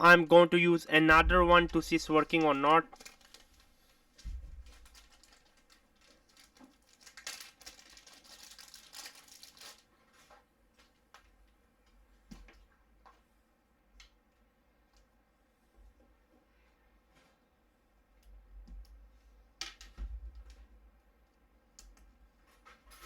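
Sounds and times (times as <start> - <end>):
rustling and crinkling: 1.3 - 13.3.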